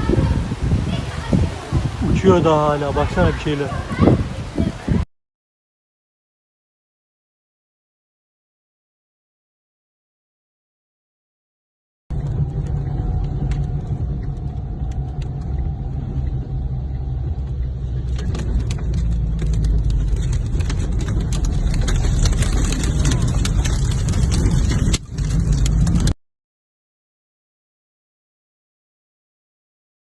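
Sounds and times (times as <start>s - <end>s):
storm wind on microphone: 0.0s - 5.1s, 12.1s - 26.2s
sharp clicks and rattles: 12.1s - 26.2s.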